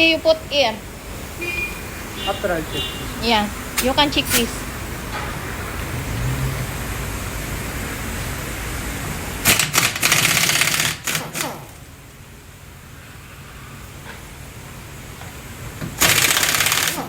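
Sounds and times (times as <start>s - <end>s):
impact wrench rattling bursts: 9.4s - 11.9s, 15.9s - 17.0s.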